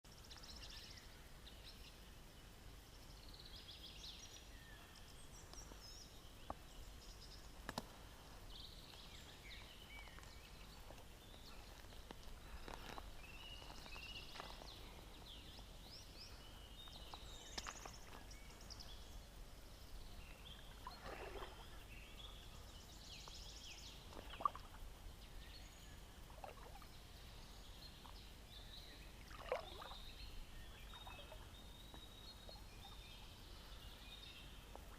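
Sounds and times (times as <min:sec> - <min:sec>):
songbirds chirping and trilling: 0:00.1 - 0:34.9.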